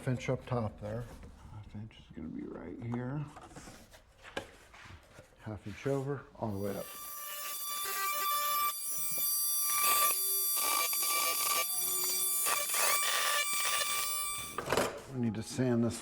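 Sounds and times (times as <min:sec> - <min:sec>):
oscillating multi-tool buzzing: 0:06.5 - 0:14.8
blade rasping into material: 0:06.6 - 0:14.6.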